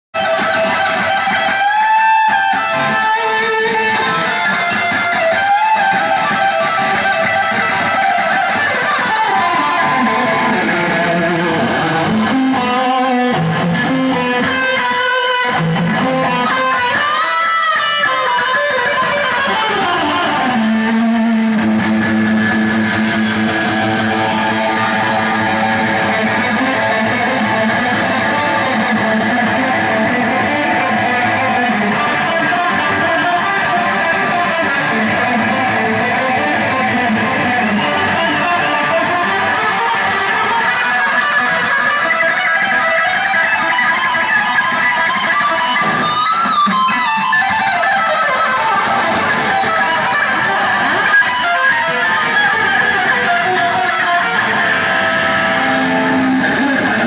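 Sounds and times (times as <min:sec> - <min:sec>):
electric guitar solo: 0:00.1 - 0:57.0
live heavy metal band: 0:00.2 - 0:57.0.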